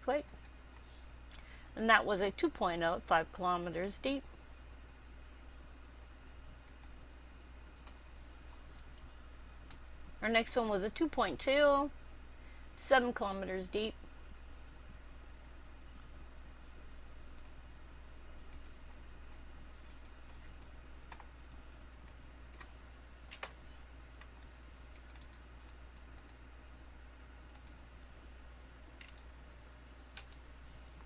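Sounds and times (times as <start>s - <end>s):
faint low hum: 0.0s - 31.0s
computer keyboard and mouse clicking: 6.6s - 7.0s, 18.5s - 18.8s, 19.9s - 20.4s, 21.1s - 21.3s, 22.0s - 23.6s, 24.2s - 26.4s, 27.5s - 27.8s, 29.0s - 29.3s, 30.2s - 30.5s.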